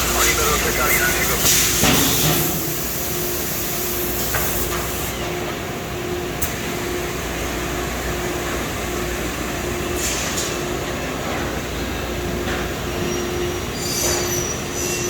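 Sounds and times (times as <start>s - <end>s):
welding machine pulsing hum: 0.0s - 5.1s.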